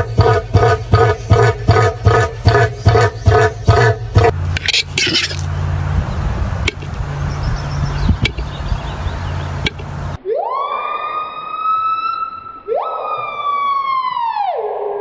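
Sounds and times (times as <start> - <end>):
low hum: 4.2 - 10.2.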